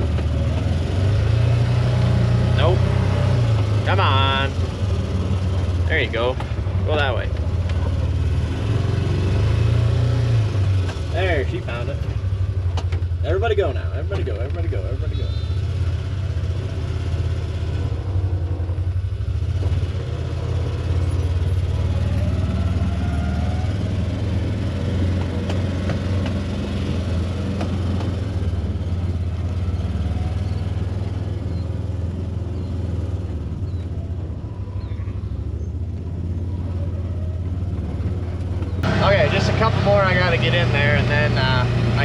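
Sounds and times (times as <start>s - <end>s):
vehicle engine droning: 0.0s - 42.0s.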